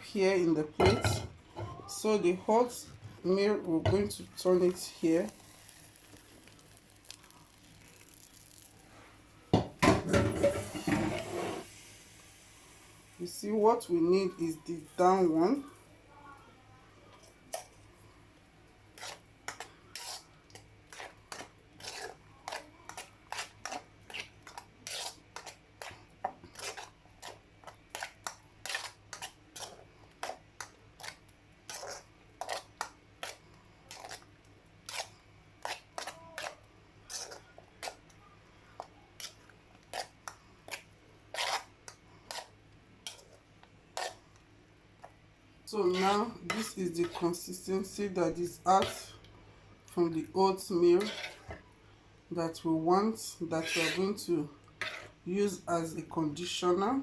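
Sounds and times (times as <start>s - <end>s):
spoon scraping in a sieve: 10.4s - 11.7s, 19.0s - 30.4s, 31.0s - 38.0s, 39.2s - 43.4s, 44.0s - 44.2s, 45.8s - 47.7s, 50.5s - 51.6s, 53.3s - 55.2s.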